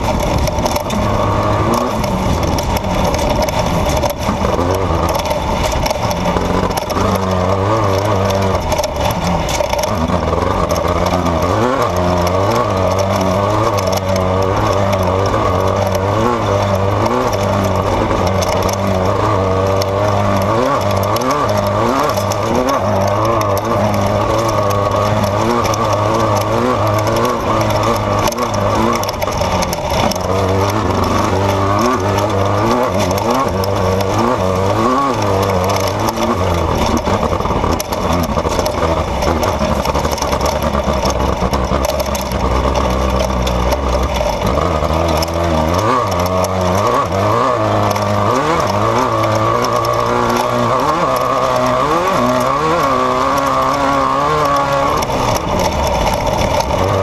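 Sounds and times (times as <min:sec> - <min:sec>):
race vehicle engine revving: 0:00.0 - 0:57.0
wind and terrain noise: 0:00.0 - 0:57.0.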